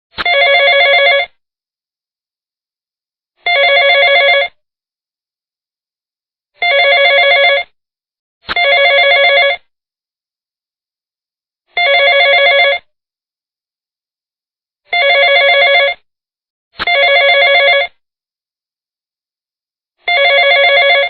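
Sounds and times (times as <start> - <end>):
telephone ringing with warbling trill: 0.2 - 1.3, 16.8 - 17.9, 20.1 - 21.0.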